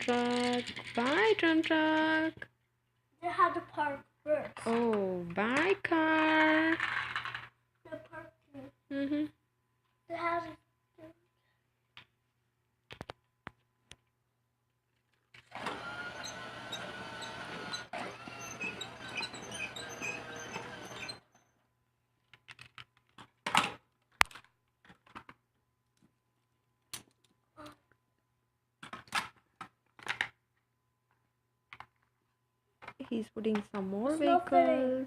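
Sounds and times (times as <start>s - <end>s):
toy train motor whirring: 0.0s - 1.3s, 15.4s - 21.4s.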